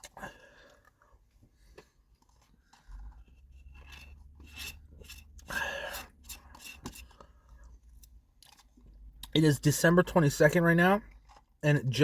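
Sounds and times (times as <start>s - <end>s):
spoon scraping in a cup: 3.2s - 7.3s
loud rasping sound: 3.6s - 7.2s
chewing: 11.0s - 11.6s.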